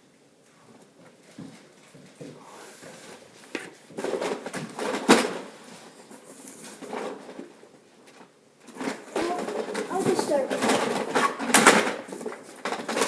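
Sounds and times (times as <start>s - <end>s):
rustling: 1.1s - 13.0s
objects knocking: 8.8s - 13.0s.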